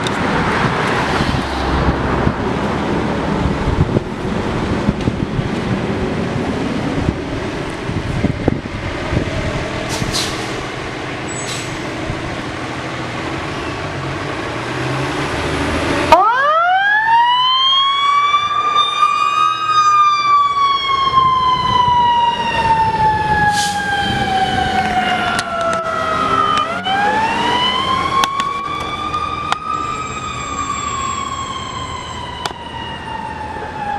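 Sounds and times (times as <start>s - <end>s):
truck engine: 0.0s - 17.1s, 18.0s - 33.9s
road noise: 0.0s - 33.9s
siren winding up and falling: 16.1s - 33.9s.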